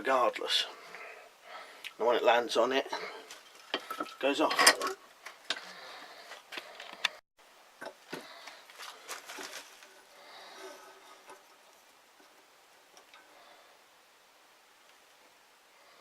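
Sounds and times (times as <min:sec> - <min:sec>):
light rustling: 0:08.1 - 0:12.3.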